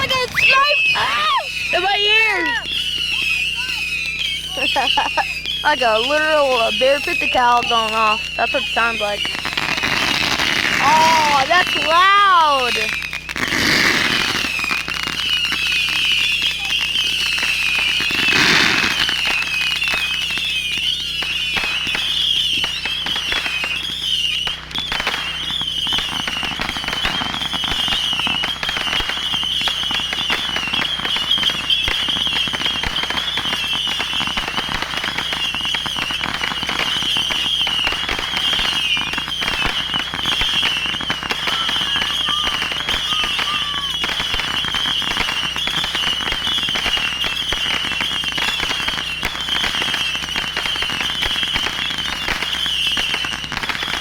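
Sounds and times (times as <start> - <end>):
high wavering whine: 0.0 - 13.1
big firework burst: 0.0 - 54.0
fireworks crackling and popping: 0.0 - 54.0.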